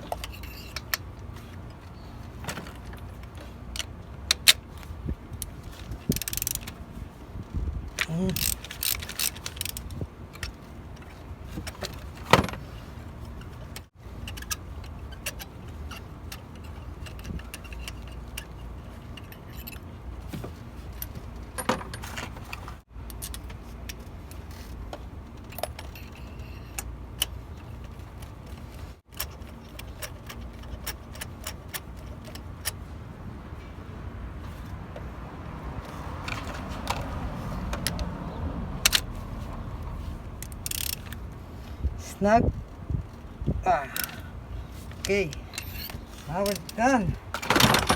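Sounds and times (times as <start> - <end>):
ratchet clicking on metal: 6.1 - 6.8, 8.2 - 10.6, 40.3 - 41.3.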